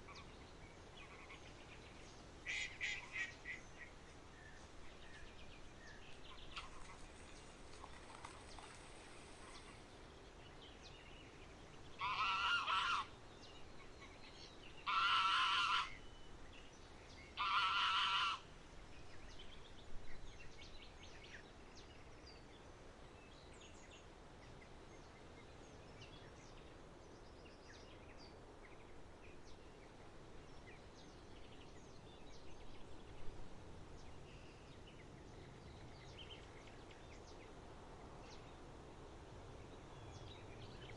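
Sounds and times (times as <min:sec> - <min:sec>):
small birds chirping: 0:00.0 - 0:17.6, 0:18.9 - 0:38.7
waterfowl honking: 0:02.5 - 0:03.6, 0:12.0 - 0:13.1, 0:14.8 - 0:16.0, 0:17.4 - 0:18.4.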